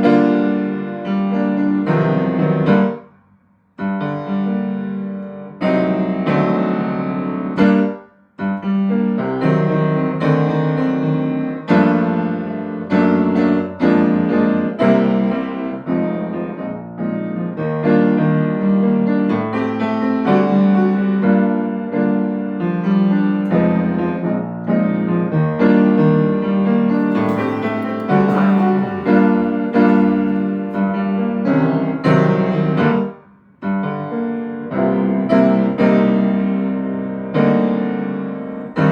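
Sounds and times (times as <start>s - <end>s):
piano notes and chords: 26.9s - 31.0s.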